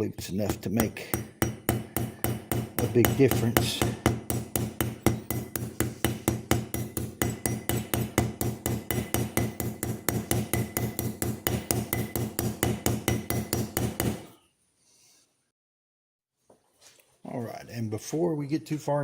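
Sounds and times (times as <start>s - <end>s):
small hammer tapping: 0.4s - 14.3s.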